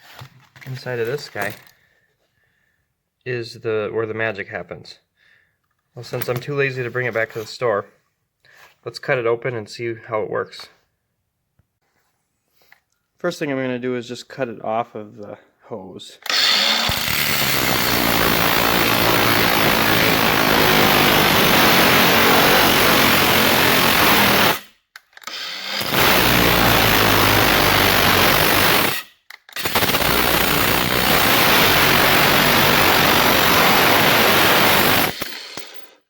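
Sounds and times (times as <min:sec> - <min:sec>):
cordless power tool cutting: 0:16.3 - 0:35.7.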